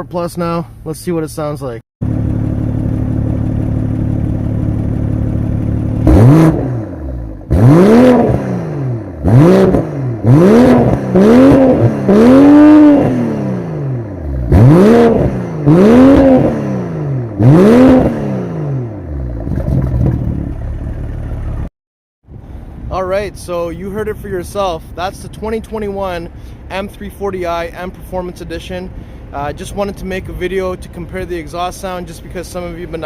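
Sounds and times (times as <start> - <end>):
car engine idling: 2.0 - 7.8, 19.0 - 21.7
car engine revving: 2.0 - 21.7.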